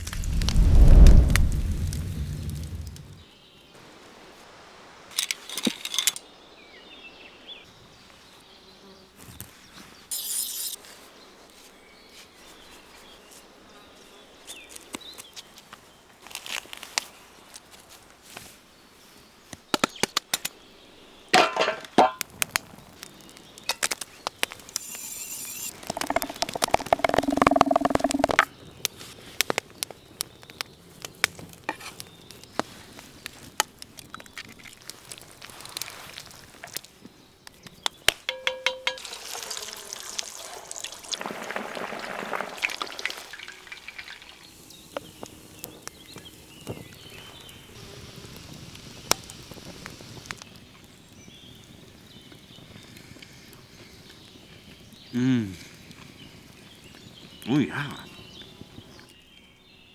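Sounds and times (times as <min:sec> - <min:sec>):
hissing: 0:00.0 - 0:03.2, 0:24.6 - 0:28.5
utensils clicking and clinking: 0:05.2 - 0:06.2, 0:38.3 - 0:39.3
liquid pouring: 0:25.0 - 0:28.5, 0:38.3 - 0:44.9.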